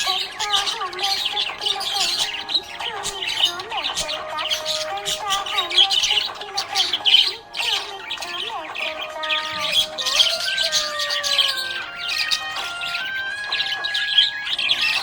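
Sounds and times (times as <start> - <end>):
budgerigars chirping and squawking: 0.0 - 15.0.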